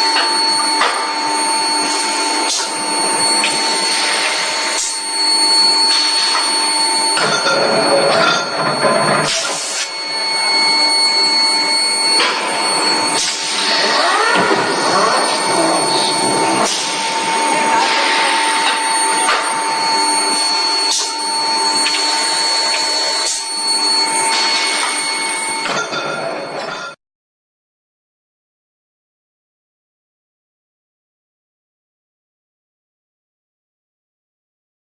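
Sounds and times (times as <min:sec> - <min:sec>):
machine hum with whining tones: 0:00.0 - 0:27.0.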